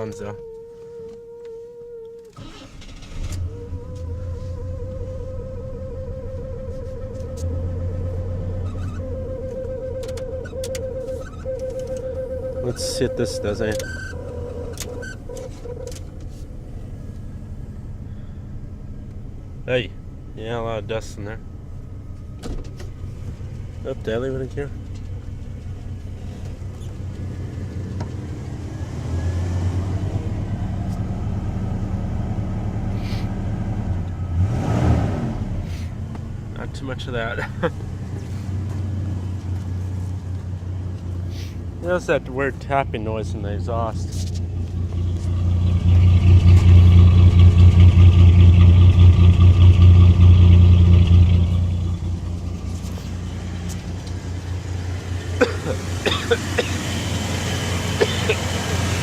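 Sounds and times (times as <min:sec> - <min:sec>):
car engine idling: 0:00.0 - 0:59.0
engine revving: 0:02.2 - 0:59.0.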